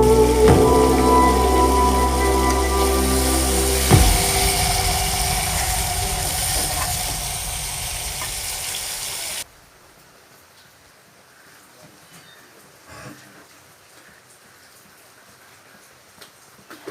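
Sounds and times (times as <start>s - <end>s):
fish sizzling in a pan: 0.2s - 9.4s.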